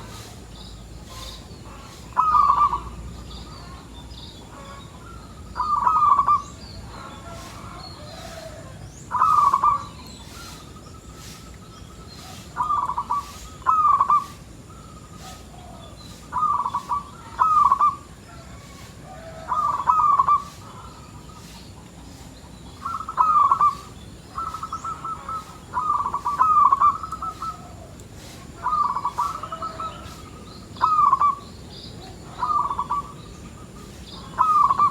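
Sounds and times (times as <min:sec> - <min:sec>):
dove cooing: 0:00.0 - 0:03.0, 0:05.6 - 0:06.4, 0:08.1 - 0:09.9, 0:12.6 - 0:14.4, 0:15.2 - 0:20.9, 0:22.8 - 0:34.9
high bird chirps: 0:22.8 - 0:27.6, 0:28.6 - 0:34.9.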